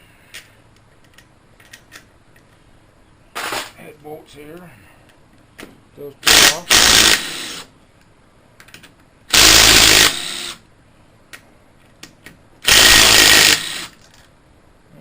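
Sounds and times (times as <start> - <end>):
impact wrench bursts: 6.2 - 7.7, 9.3 - 10.6, 12.6 - 14.0.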